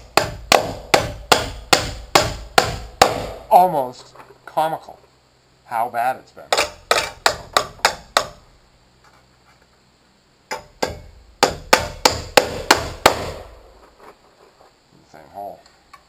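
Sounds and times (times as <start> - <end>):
hammer driving nails into metal: 0.0 - 3.4, 6.5 - 8.4, 10.5 - 13.6.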